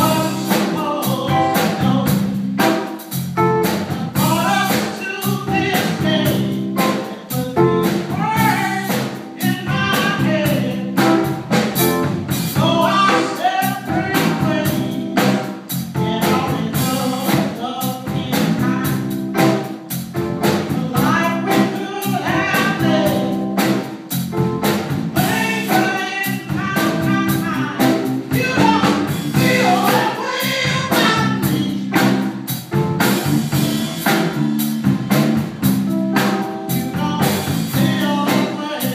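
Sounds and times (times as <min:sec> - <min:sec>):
woman singing: 0:00.0 - 0:02.2, 0:04.0 - 0:11.3, 0:12.6 - 0:15.4, 0:16.0 - 0:19.5, 0:20.5 - 0:23.8, 0:25.2 - 0:32.2, 0:36.7 - 0:38.9
live blues band playing: 0:00.0 - 0:38.9.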